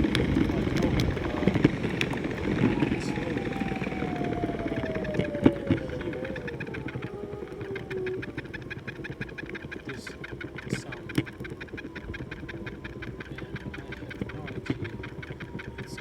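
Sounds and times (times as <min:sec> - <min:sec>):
faint motor whine: 0:00.0 - 0:16.0
skateboard wheel ticking: 0:00.0 - 0:16.0.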